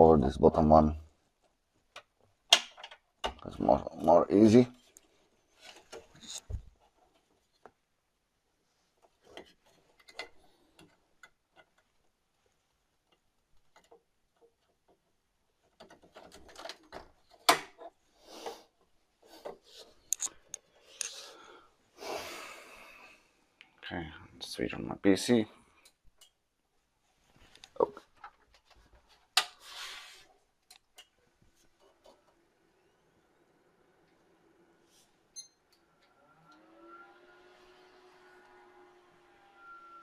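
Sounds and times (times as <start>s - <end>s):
clicks and taps inside computer case: 1.9s - 3.4s
short scrape: 29.6s - 30.3s.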